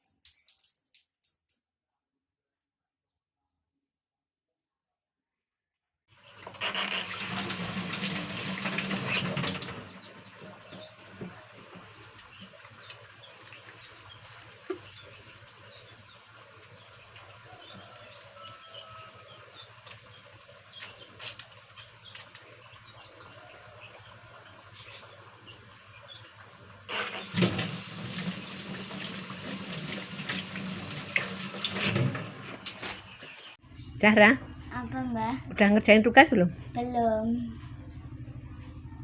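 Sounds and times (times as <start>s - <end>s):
water running from a tap: 0.0s - 1.4s, 6.7s - 15.6s, 26.9s - 32.5s
low hum: 33.6s - 39.0s.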